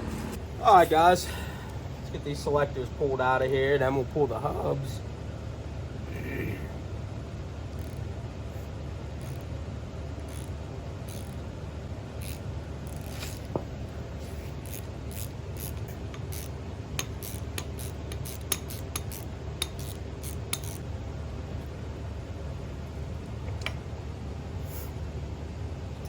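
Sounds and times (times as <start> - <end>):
steady low hum: 0.0 - 26.0
hand tools clicking on metal: 14.7 - 20.8.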